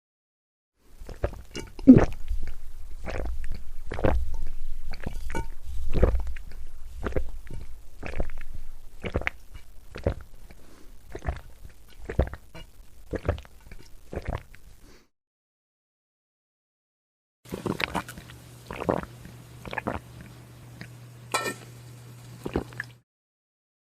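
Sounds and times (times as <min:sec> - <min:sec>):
person gulping a drink: 0:01.0 - 0:14.7, 0:17.5 - 0:21.0, 0:22.4 - 0:23.0.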